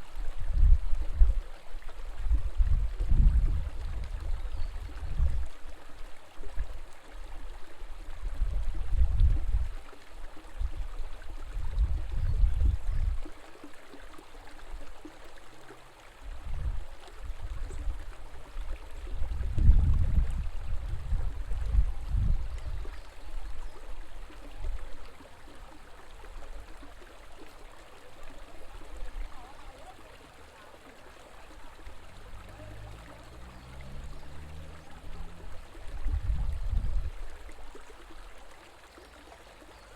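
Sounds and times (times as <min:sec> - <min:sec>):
river water rushing: 0:13.2 - 0:39.9.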